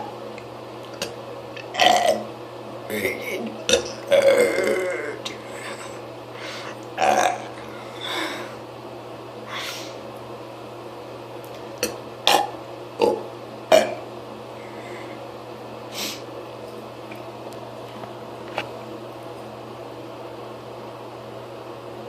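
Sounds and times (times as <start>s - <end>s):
person burping: 1.7s - 2.2s, 2.9s - 5.4s, 7.0s - 7.7s, 11.8s - 14.0s
soft breath: 5.5s - 6.8s, 14.6s - 15.2s.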